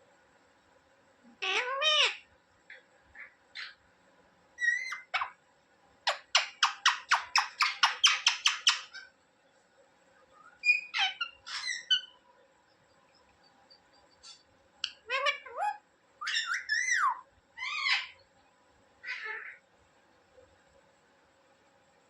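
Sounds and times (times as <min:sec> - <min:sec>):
parrot squawking and chirping: 0:01.4 - 0:02.3, 0:03.2 - 0:03.8, 0:04.6 - 0:05.4, 0:06.0 - 0:09.1, 0:10.4 - 0:12.2, 0:14.2 - 0:18.2, 0:19.0 - 0:19.6.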